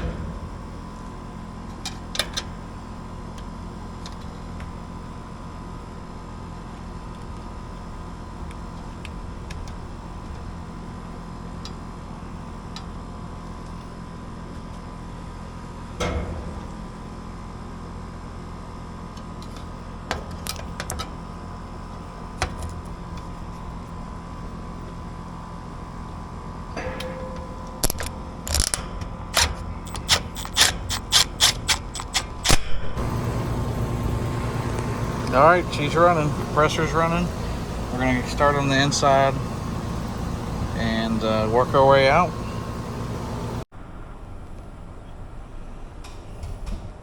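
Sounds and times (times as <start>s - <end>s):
condenser fan humming: 0.0s - 43.7s
compressor low hum: 0.0s - 46.7s
sharp clicks and knocks: 26.8s - 41.1s.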